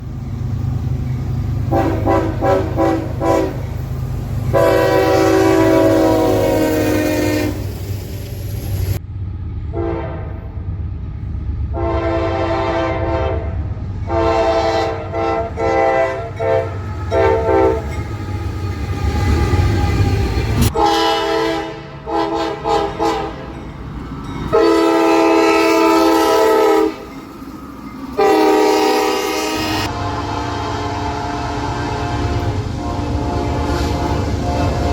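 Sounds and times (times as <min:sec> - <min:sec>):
train horn chimes: 0:01.7 - 0:03.7, 0:04.5 - 0:07.6, 0:14.1 - 0:23.6, 0:24.4 - 0:27.2, 0:28.2 - 0:34.9.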